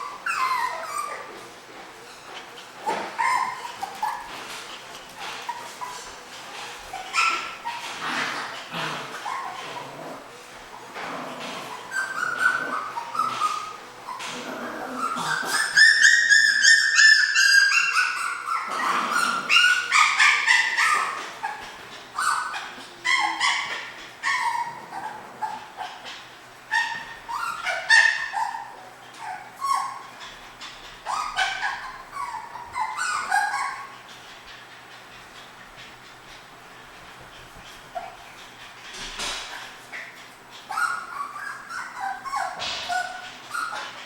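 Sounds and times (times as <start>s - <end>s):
puppies whining and yipping: 0.0s - 11.0s, 11.6s - 44.0s.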